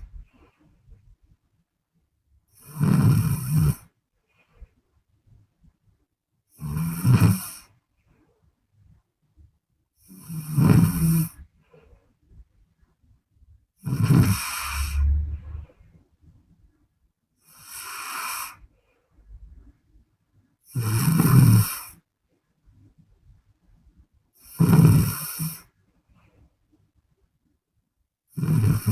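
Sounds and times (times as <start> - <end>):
woman snoring: 2.6 - 3.9, 6.6 - 7.7, 10.0 - 11.4, 13.8 - 15.6, 20.7 - 22.0, 24.4 - 25.7, 28.3 - 28.9.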